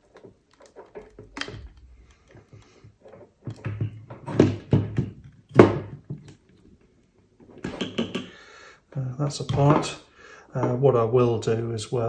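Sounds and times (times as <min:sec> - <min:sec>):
plastic parts clicking and knocking: 0:00.0 - 0:06.8, 0:07.4 - 0:08.4.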